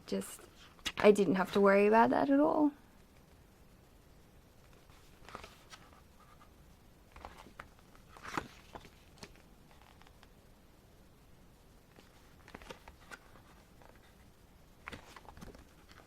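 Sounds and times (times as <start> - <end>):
pages being turned: 0.6 - 1.0, 4.6 - 6.5, 7.1 - 10.3, 11.9 - 14.2, 14.8 - 16.0.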